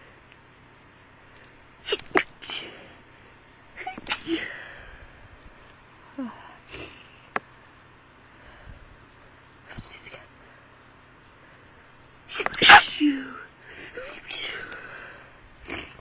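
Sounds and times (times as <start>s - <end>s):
person sneezing: 1.8s - 2.8s, 3.8s - 4.7s, 12.3s - 14.5s.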